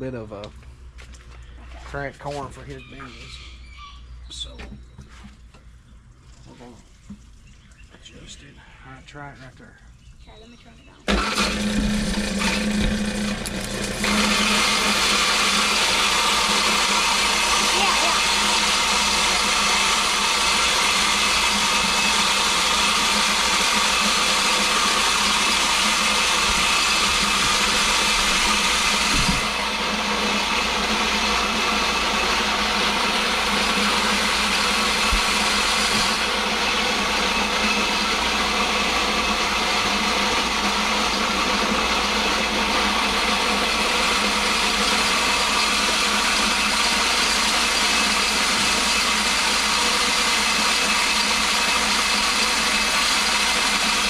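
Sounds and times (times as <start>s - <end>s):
electric grinder cracking corn: 11.1s - 54.0s.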